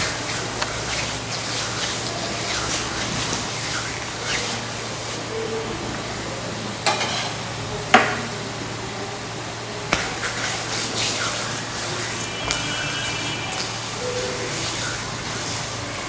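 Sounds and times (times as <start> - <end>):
hands rubbing oil on skin: 0.0 - 5.2, 9.9 - 15.8.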